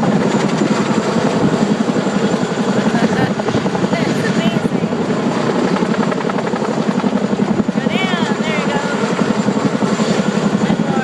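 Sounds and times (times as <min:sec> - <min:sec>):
helicopter rotor chopping: 0:00.0 - 0:11.0.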